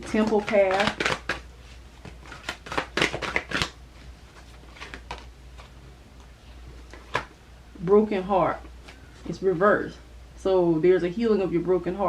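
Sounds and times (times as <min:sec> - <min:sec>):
cards being shuffled: 0:00.0 - 0:05.8, 0:06.9 - 0:07.3.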